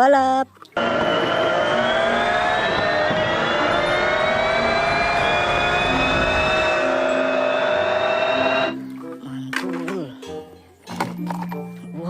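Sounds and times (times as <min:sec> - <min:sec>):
race car engine whine: 0:00.8 - 0:08.8.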